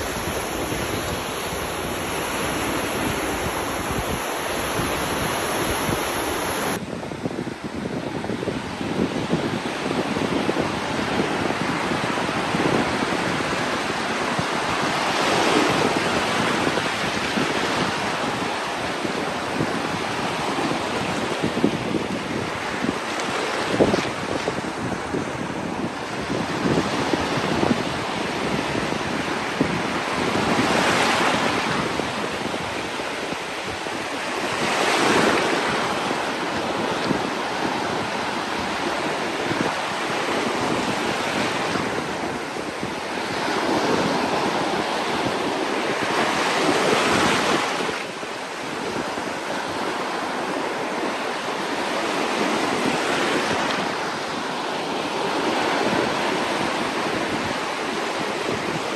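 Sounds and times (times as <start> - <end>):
waves breaking: 0.0 - 6.8, 26.0 - 58.9
ocean surf: 0.0 - 8.0, 9.5 - 58.9.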